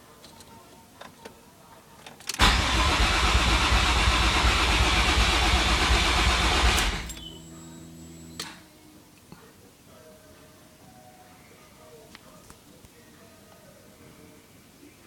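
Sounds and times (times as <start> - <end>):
car engine cranking: 2.3 - 7.4.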